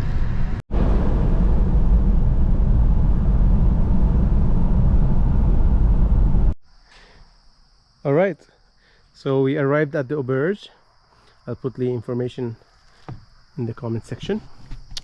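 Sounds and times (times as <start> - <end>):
crickets chirring: 6.6 - 15.0.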